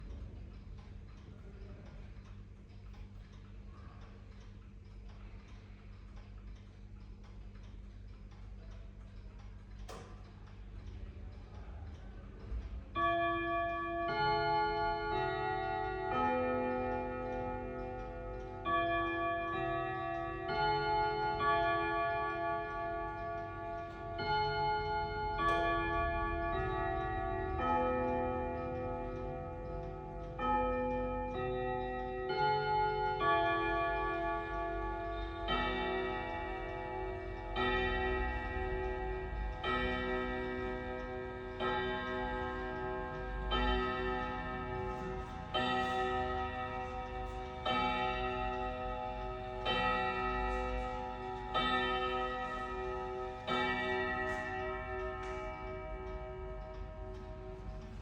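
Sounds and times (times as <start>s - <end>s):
chime clock melody: 12.9s - 58.0s.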